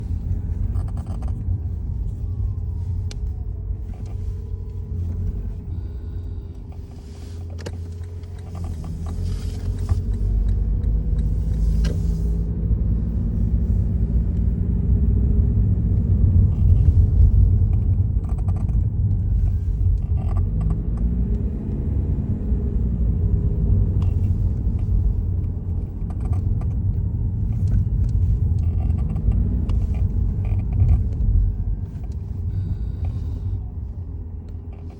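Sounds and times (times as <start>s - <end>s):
creaking: 0.0s - 1.6s, 3.8s - 12.0s, 24.0s - 33.7s
steady low rumble: 0.0s - 34.9s.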